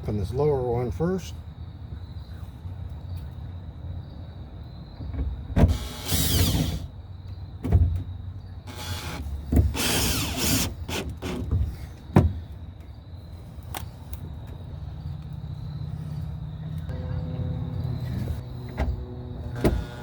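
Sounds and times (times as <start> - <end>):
power drill driving screws: 5.7 - 6.9, 8.7 - 11.4, 19.6 - 20.0.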